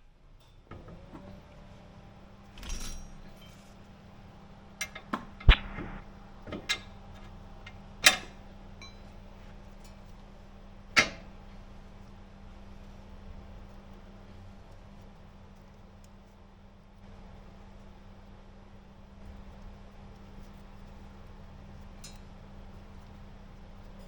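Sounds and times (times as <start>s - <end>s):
faint steady hum: 1.6s - 24.0s.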